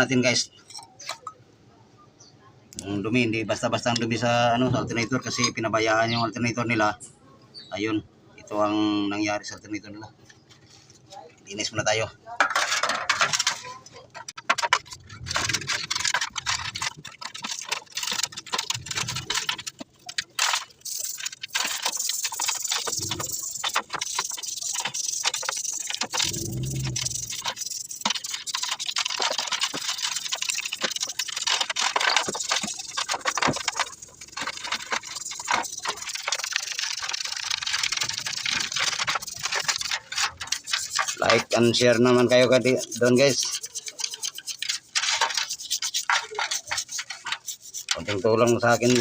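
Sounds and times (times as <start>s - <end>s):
small metal parts rattling: 0.3s - 1.4s, 10.2s - 49.0s
scratchy scrubbing: 12.6s - 49.0s.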